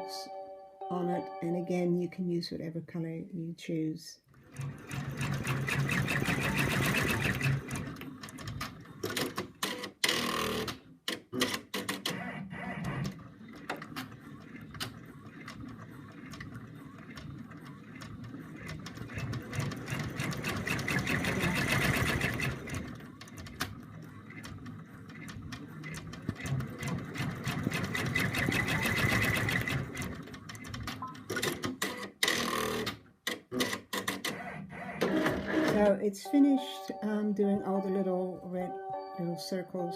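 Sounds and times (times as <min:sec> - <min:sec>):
embroidery machine stitching: 0:04.3 - 0:36.0.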